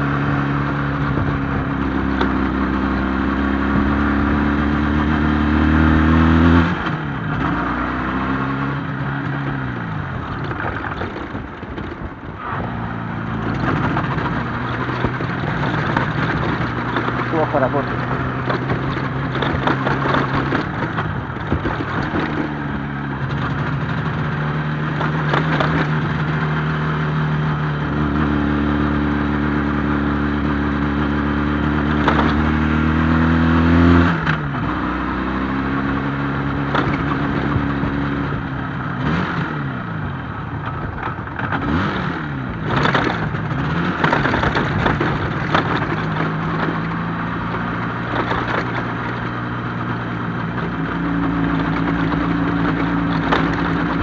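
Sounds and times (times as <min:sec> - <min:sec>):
two-stroke engine revving: 0:00.0 - 0:39.9, 0:41.4 - 0:54.0
engine knocks and clatter: 0:00.0 - 0:54.0.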